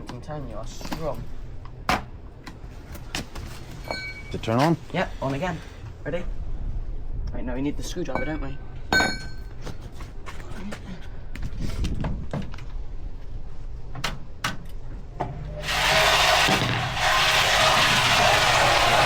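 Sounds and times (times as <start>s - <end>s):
washing machine running: 15.6s - 19.0s.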